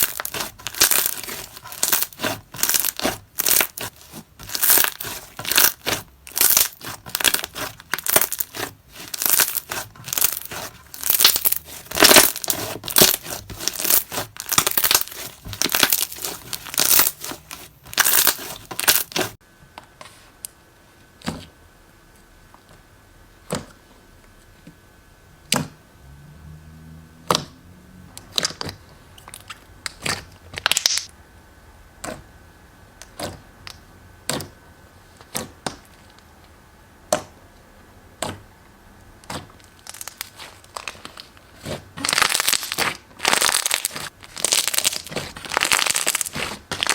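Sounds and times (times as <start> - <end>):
slime squeezed crackling: 0.0 - 19.4, 39.6 - 46.9.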